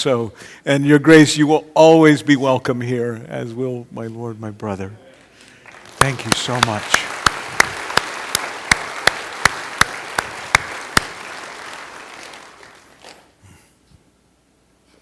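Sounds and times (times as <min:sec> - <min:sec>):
crowd applauding: 0:05.3 - 0:13.3
sharp claps close by: 0:05.7 - 0:12.9.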